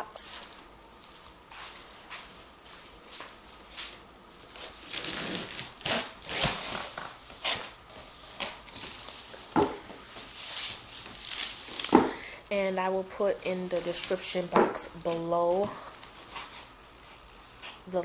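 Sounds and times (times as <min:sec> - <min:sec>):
cardboard and packing rustling: 0:00.2 - 0:12.2.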